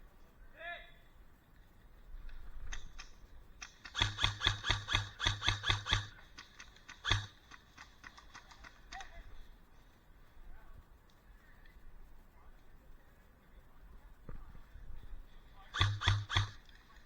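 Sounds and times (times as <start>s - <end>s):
airsoft gun shots: 2.7s - 8.5s, 15.7s - 16.7s.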